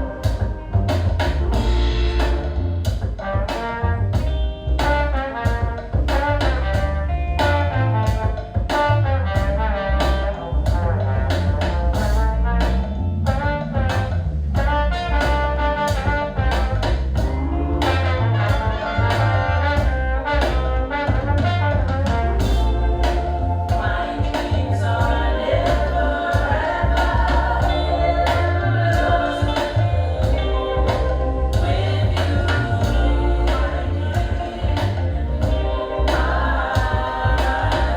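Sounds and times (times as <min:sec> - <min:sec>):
brass instruments: 0:00.0 - 0:37.9
heavy bass line: 0:00.0 - 0:37.9
steady drum beat: 0:00.0 - 0:37.9.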